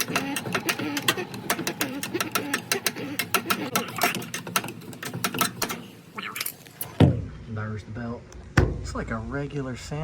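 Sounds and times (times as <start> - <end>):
tool scraping blower wheel clicks: 0.0 - 5.9.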